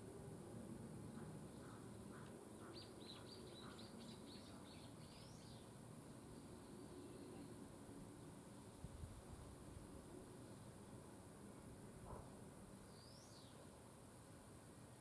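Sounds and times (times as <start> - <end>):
faint steady hiss: 0.0 - 15.0
songbirds chirping: 0.9 - 8.6, 12.6 - 14.1.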